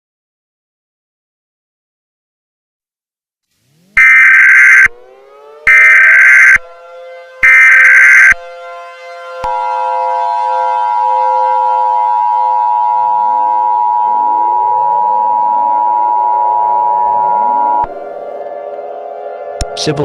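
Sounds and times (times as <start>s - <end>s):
low synth drone: 3.7s - 20.0s
two-tone alarm: 3.7s - 20.0s
swooping synth tones: 3.8s - 8.7s
data burst: 4.0s - 4.9s, 5.7s - 6.6s, 7.4s - 8.4s.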